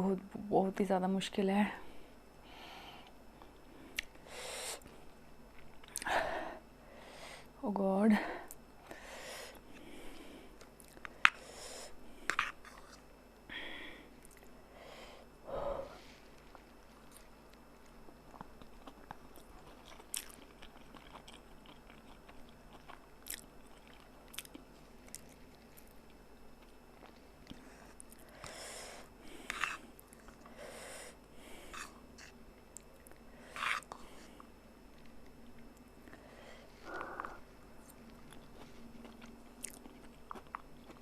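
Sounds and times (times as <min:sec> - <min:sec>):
person chewing noodles: 0:05.5 - 0:06.2, 0:09.5 - 0:13.1, 0:14.1 - 0:14.6, 0:16.3 - 0:41.0.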